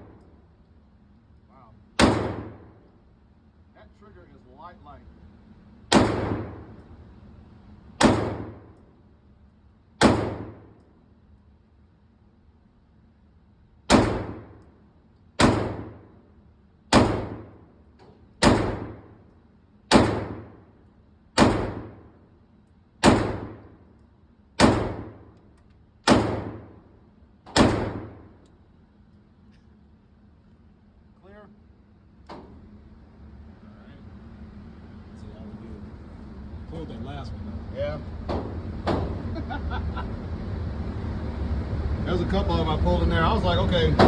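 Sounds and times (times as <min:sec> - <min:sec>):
pistol shots with echo: 0:02.0 - 0:02.8, 0:05.9 - 0:06.8, 0:08.0 - 0:08.8, 0:10.0 - 0:10.7, 0:13.9 - 0:14.6, 0:15.4 - 0:16.1, 0:16.9 - 0:17.6, 0:18.4 - 0:19.1, 0:19.9 - 0:20.6, 0:21.4 - 0:22.0, 0:23.0 - 0:23.8, 0:24.6 - 0:25.2, 0:26.0 - 0:26.8, 0:27.6 - 0:28.4.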